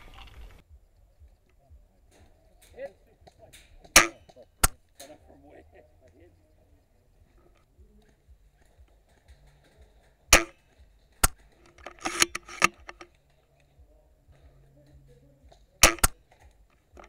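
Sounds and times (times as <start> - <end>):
airsoft gun shots: 3.9 - 4.8, 10.3 - 10.6, 15.8 - 16.2.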